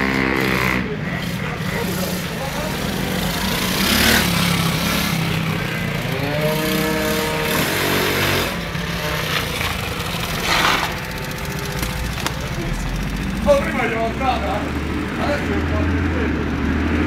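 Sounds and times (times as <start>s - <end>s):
quad bike engine revving: 0.0s - 17.0s.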